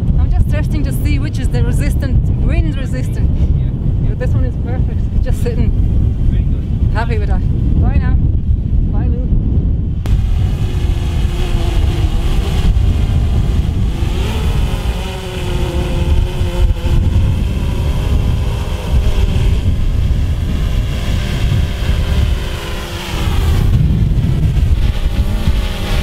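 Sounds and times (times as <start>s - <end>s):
wind rumble on microphone: 0.0s - 26.0s
drone propellers whining: 9.9s - 26.0s.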